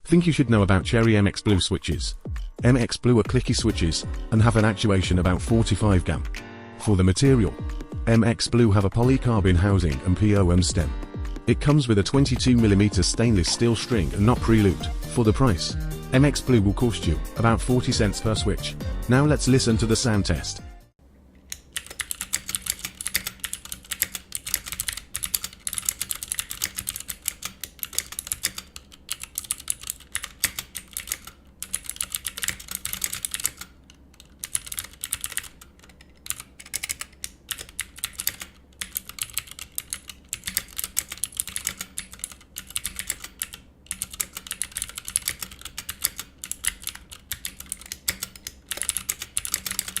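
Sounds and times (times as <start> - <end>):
mechanical keyboard typing clicks: 21.5 - 50.0.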